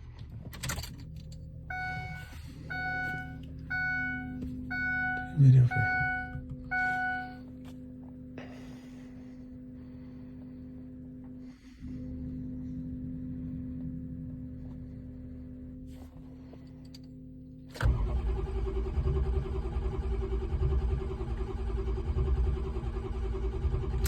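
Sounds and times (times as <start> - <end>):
steady hum: 0.6 - 17.8
car starter motor cranking: 17.7 - 24.0.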